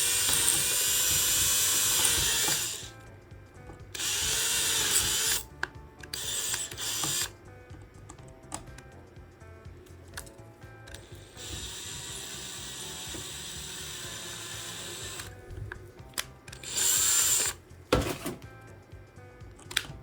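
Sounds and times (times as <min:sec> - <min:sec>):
small power drill drilling: 0:00.0 - 0:03.0, 0:04.0 - 0:05.5, 0:06.2 - 0:07.4, 0:11.0 - 0:15.4, 0:16.6 - 0:17.6
faint background music: 0:00.0 - 0:20.0.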